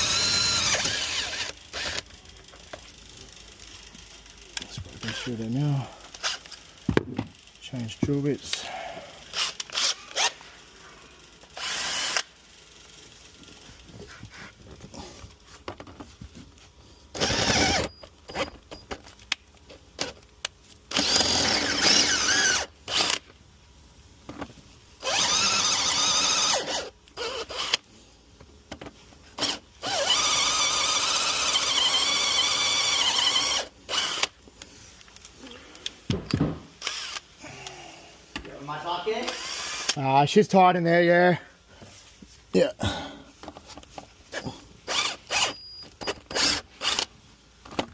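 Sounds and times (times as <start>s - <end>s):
power drill running: 0.0s - 2.2s, 9.3s - 10.4s, 11.4s - 12.4s, 17.1s - 18.5s, 20.9s - 23.2s, 25.0s - 27.8s, 29.4s - 34.4s, 36.8s - 37.3s, 39.2s - 40.0s, 44.3s - 47.1s.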